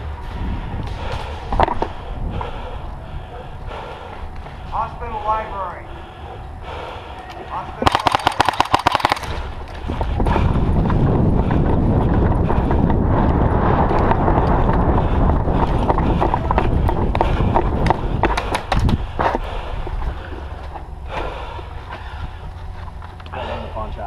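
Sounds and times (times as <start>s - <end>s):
running footsteps: 0.0s - 23.5s
airsoft gun fire: 7.8s - 9.5s.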